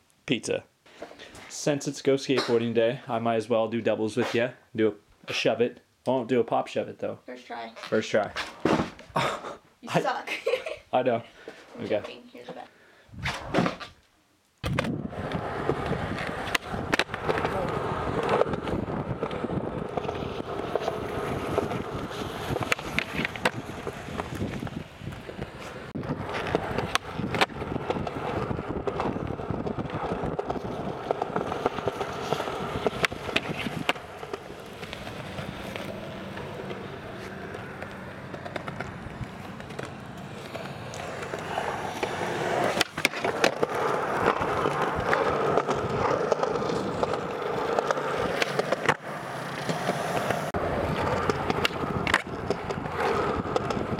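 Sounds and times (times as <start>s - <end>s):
skateboard wheels rolling on pavement: 0.9s - 9.4s, 13.2s - 53.9s
skateboard clacks: 14.7s - 53.9s.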